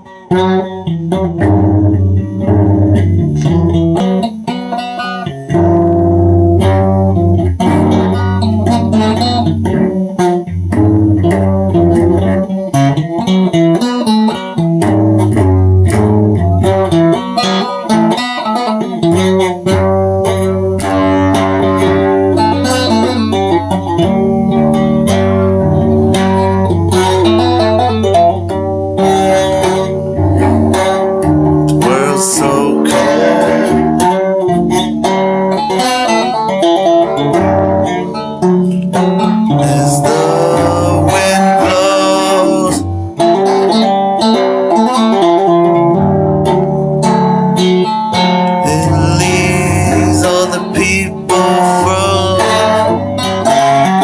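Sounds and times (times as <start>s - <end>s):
plucked guitar notes: 0.0s - 54.0s
bass line: 29.0s - 34.3s, 39.5s - 43.2s, 48.6s - 53.2s.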